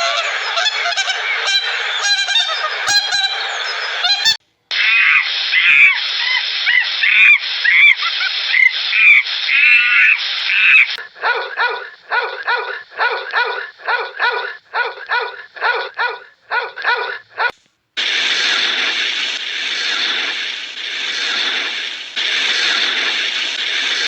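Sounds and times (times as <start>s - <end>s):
animal barking: 6.7s - 17.5s
steady rushing noise: 18.0s - 24.0s.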